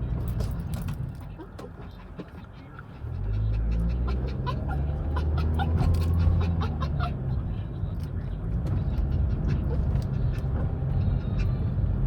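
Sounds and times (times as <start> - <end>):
car rumbling: 0.0 - 12.0
dog whining: 3.4 - 7.2.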